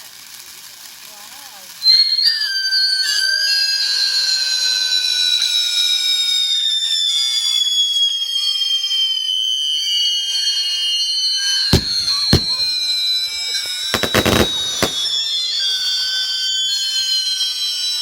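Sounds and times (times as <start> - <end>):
whistling fireworks: 0.1 - 18.0
firework bang: 11.8 - 15.2.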